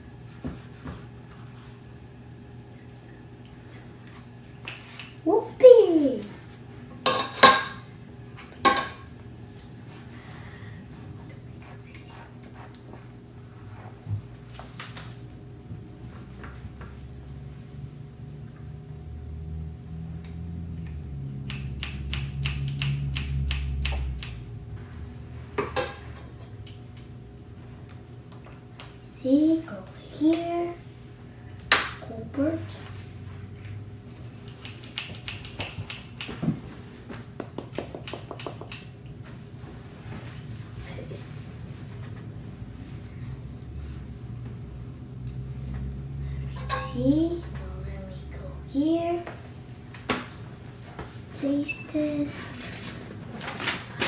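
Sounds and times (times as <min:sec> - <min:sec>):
low steady hum: 0:00.0 - 0:54.0
utensils clicking against dishes: 0:34.4 - 0:36.3
small kitchen taps: 0:37.4 - 0:38.8.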